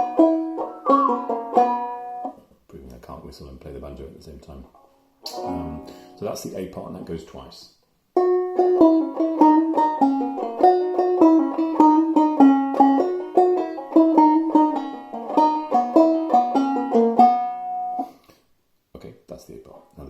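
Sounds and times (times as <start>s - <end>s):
banjo plucking a jig: 0.0s - 2.4s, 4.6s - 7.1s, 8.2s - 18.1s.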